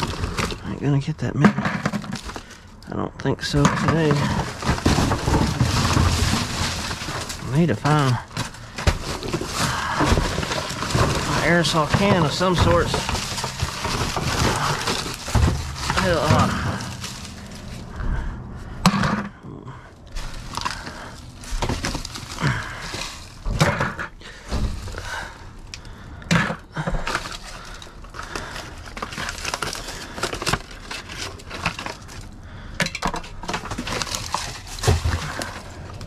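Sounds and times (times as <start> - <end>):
metal oil filters clanking: 1.4 - 19.4.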